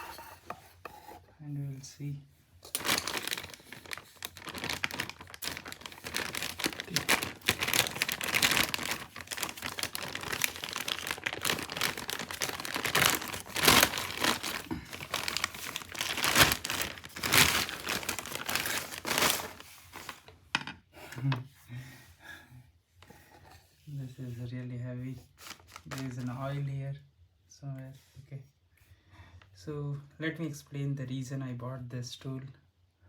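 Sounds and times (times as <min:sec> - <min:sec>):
plastic cover crinkling and rustling: 0:02.6 - 0:20.5, 0:25.3 - 0:26.5.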